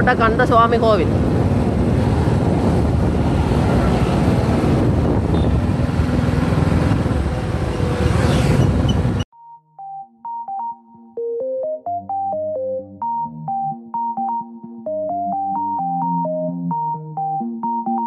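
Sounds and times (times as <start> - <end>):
motorcycle engine and road noise: 0.0 - 9.3
wind rushing: 0.1 - 9.2
electronic keyboard music: 8.7 - 18.0.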